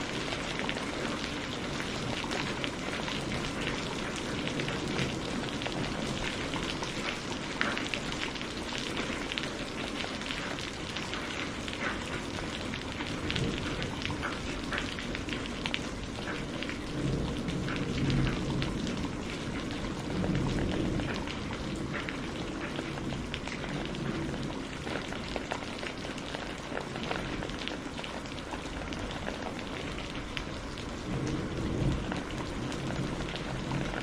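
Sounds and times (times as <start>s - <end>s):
steady rain with drop hits: 0.0s - 34.0s
distant thunder rumbling: 12.5s - 25.8s, 28.3s - 34.0s.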